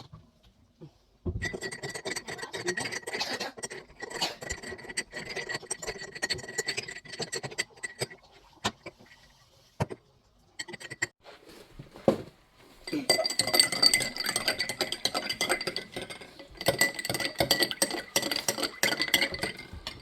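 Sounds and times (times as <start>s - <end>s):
spoon clinking in a glass: 12.8s - 20.0s.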